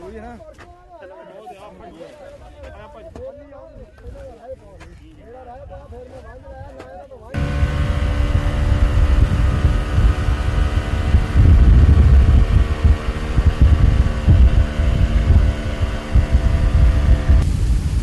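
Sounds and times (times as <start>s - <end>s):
engine humming: 7.4s - 18.0s
wind buffeting microphone: 7.4s - 18.0s.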